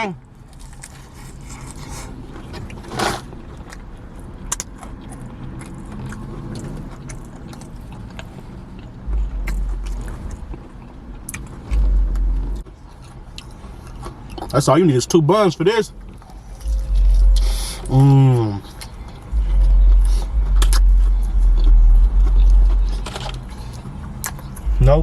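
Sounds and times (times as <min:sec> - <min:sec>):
chewing and crunching: 0:00.2 - 0:25.0
low rumble: 0:07.6 - 0:12.8, 0:15.9 - 0:25.0.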